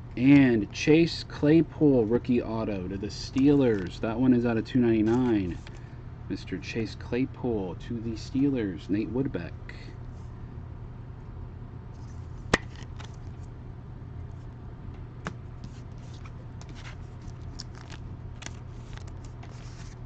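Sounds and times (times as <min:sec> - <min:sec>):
steady low hum: 0:00.0 - 0:20.0
trading cards rustling: 0:03.0 - 0:05.8, 0:12.0 - 0:13.5, 0:15.2 - 0:20.0.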